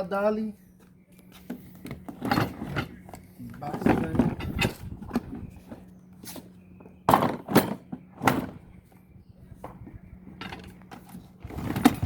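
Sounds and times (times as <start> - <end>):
low steady hum: 0.0 - 12.0
plastic toolboxes thunking: 7.0 - 8.7, 10.4 - 12.0.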